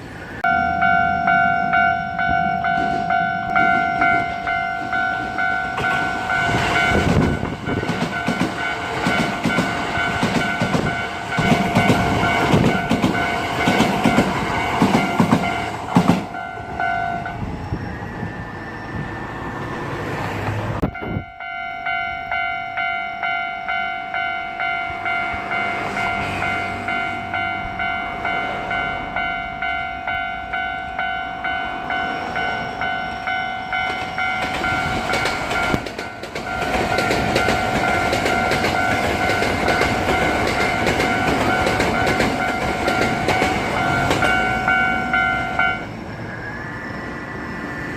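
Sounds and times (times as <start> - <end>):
crossing alarm bell ringing: 0.2 - 19.4, 20.8 - 47.9
train wheels clattering on rails: 2.2 - 19.0, 24.2 - 46.0.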